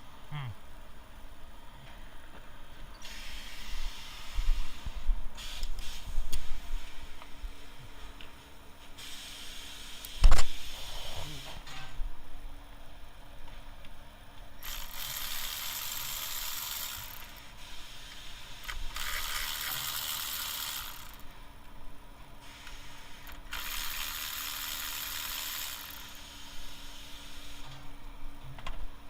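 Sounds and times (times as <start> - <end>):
ratchet wrench spinning: 14.6 - 17.6, 18.6 - 21.3, 23.2 - 26.3.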